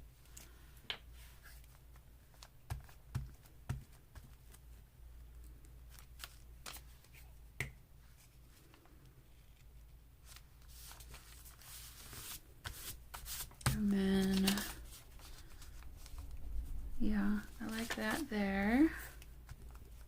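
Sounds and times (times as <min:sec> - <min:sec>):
paper rustling: 0:09.5 - 0:16.4, 0:17.4 - 0:20.0.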